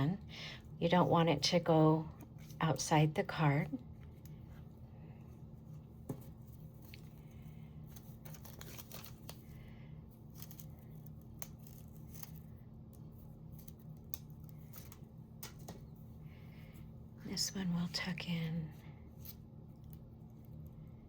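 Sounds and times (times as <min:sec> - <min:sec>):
faint steady hum: 0:00.0 - 0:21.0
paper rustling: 0:06.0 - 0:09.6.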